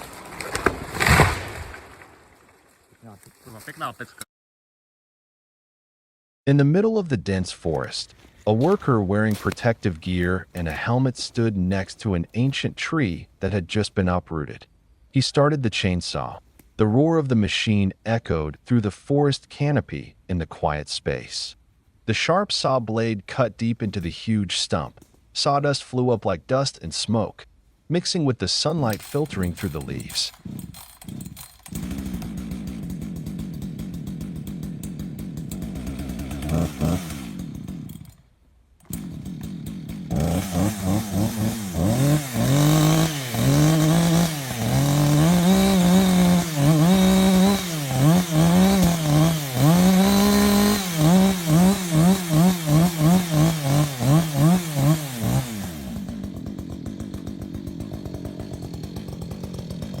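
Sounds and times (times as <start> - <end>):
chainsaw engine revving: 28.8 - 38.2, 38.8 - 60.0.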